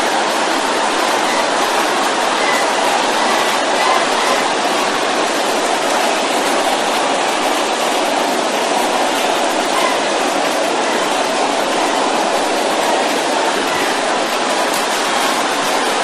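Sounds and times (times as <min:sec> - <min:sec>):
congregation praying aloud: 0:01.2 - 0:05.9.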